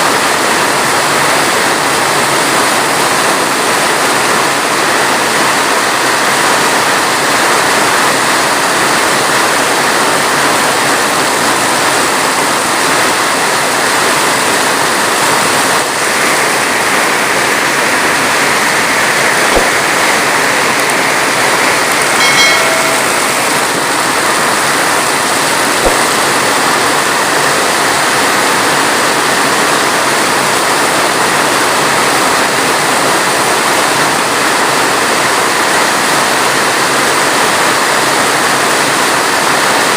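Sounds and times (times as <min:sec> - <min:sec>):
heavy rain hissing: 0:00.0 - 0:39.9
brief pitched tone: 0:21.9 - 0:25.1.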